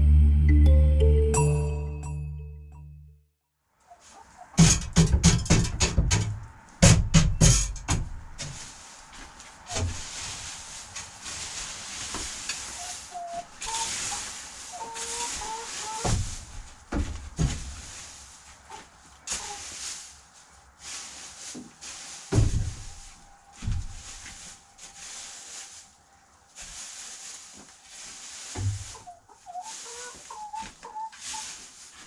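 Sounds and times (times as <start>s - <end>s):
music beat: 0.0s - 3.0s
hens calling: 3.9s - 4.6s, 8.5s - 32.0s
hissing rustle: 8.4s - 32.0s.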